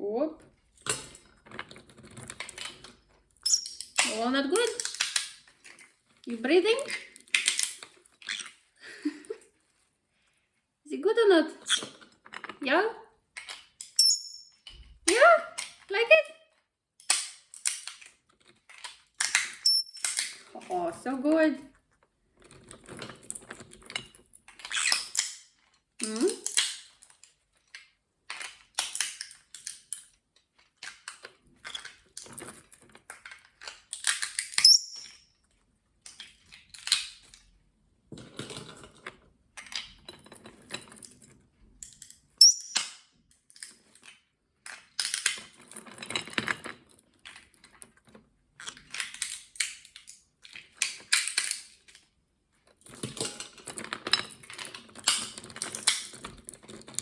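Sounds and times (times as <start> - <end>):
bird squeaking: 3.4 - 3.8, 14.0 - 14.6, 19.6 - 20.0, 34.6 - 35.1, 42.4 - 42.8.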